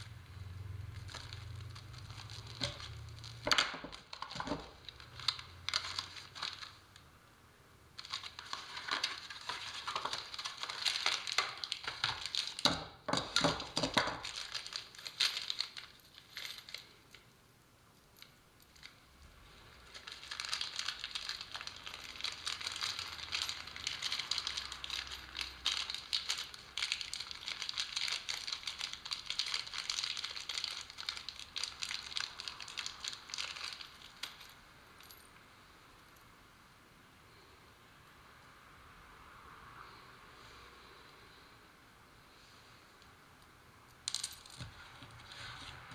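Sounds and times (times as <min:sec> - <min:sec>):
plastic sheeting crinkling: 0:00.0 - 0:07.0, 0:08.0 - 0:16.9, 0:19.8 - 0:34.6.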